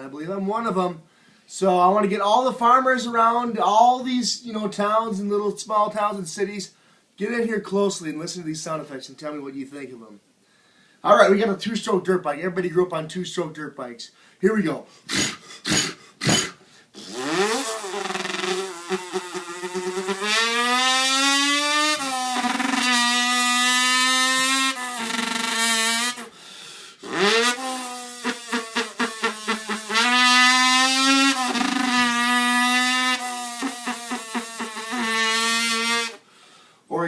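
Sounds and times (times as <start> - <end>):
man imitating dirt bike revving: 15.1 - 26.3, 27.0 - 36.2.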